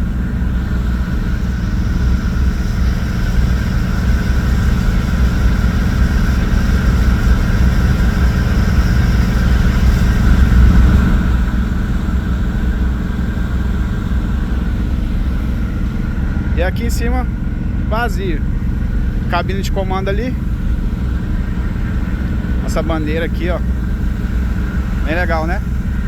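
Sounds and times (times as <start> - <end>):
ferry engines rumbling: 0.0 - 26.0.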